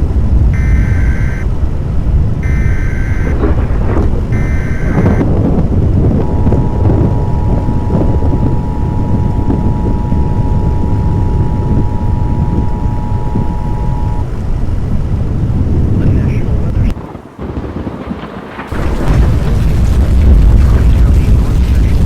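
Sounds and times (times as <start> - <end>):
heavy rain: 0.0 - 22.0
roaring tornado winds: 0.0 - 22.0
wind buffeting microphone: 0.0 - 22.0
high electronic tone: 0.5 - 1.5, 2.4 - 3.5, 4.3 - 5.3, 6.2 - 14.4.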